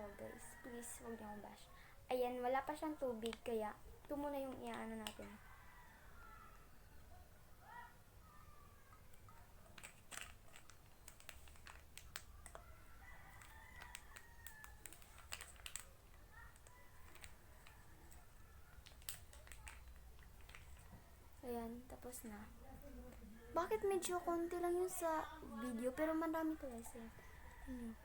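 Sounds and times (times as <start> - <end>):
faint clicks and taps: 2.6 - 5.5, 8.9 - 28.0.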